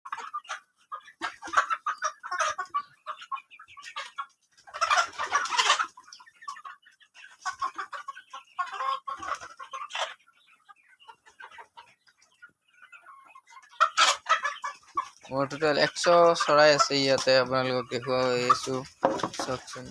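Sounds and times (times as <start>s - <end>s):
chickens clucking: 0.1s - 19.9s.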